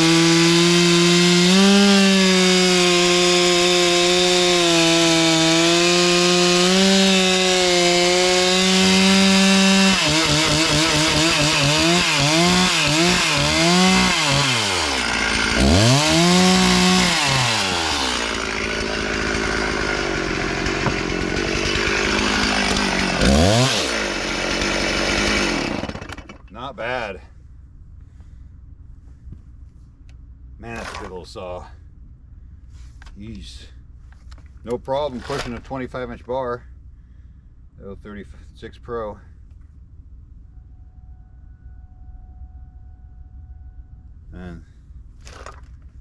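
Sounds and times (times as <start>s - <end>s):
chainsaw cutting wood: 0.0s - 26.5s.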